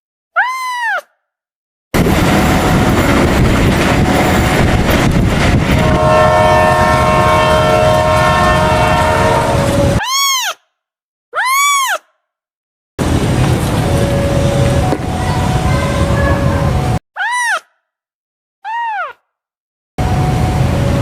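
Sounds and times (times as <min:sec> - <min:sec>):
train passing with rail noise: 0:02.0 - 0:10.0, 0:13.0 - 0:17.0, 0:20.0 - 0:21.0
locomotive horn chord: 0:05.7 - 0:10.0.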